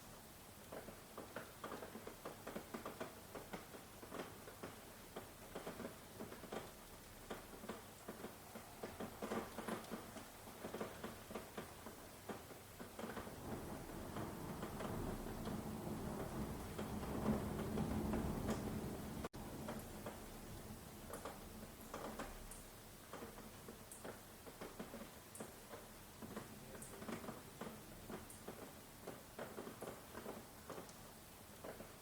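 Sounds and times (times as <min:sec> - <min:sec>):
rain drops pattering: 0:00.0 - 0:32.0
distant thunder rumble: 0:13.2 - 0:19.7.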